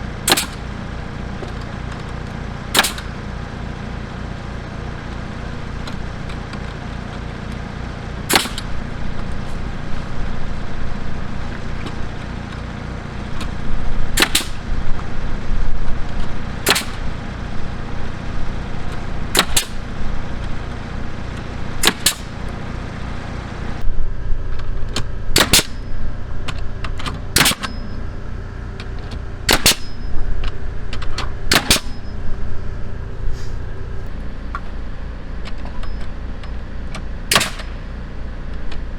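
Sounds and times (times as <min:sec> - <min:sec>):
diesel generator humming: 0:00.0 - 0:38.9
nail gun shots: 0:00.2 - 0:00.6, 0:02.7 - 0:03.2, 0:08.3 - 0:08.8, 0:14.2 - 0:14.7, 0:16.6 - 0:17.1, 0:19.3 - 0:19.9, 0:21.8 - 0:22.4, 0:25.4 - 0:25.8, 0:27.0 - 0:27.8, 0:29.5 - 0:30.0, 0:31.2 - 0:32.1, 0:37.3 - 0:37.8.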